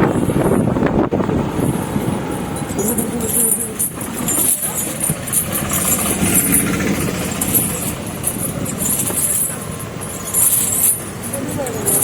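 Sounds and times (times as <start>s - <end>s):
traffic hum and hiss: 0.0s - 12.0s.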